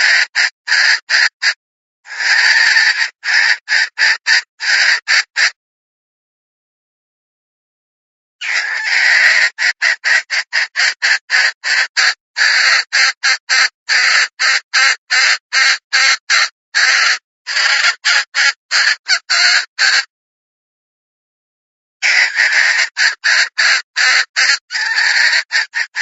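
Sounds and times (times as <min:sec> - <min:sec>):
hen clucking harshly: 0:00.0 - 0:05.6, 0:08.4 - 0:20.1, 0:22.0 - 0:26.0.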